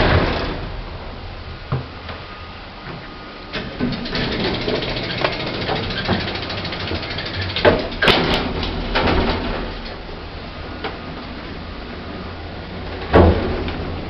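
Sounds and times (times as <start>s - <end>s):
lift running hum: 0.0s - 14.0s
lift mechanism clicks and clunks: 2.9s - 11.4s, 12.7s - 14.0s.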